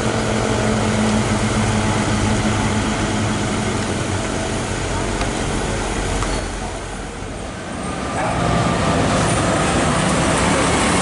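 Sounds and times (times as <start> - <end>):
truck engine running: 0.0 - 7.8
road noise: 0.0 - 11.0.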